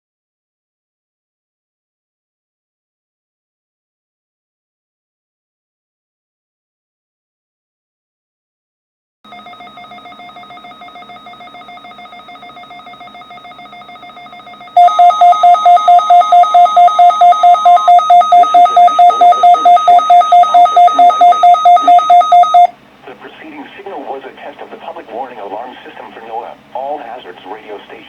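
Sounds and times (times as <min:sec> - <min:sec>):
rapid loud beeps: 0:09.3 - 0:22.7
warbling electronic alarm tone: 0:09.3 - 0:22.7
faint steady tone: 0:09.3 - 0:22.8.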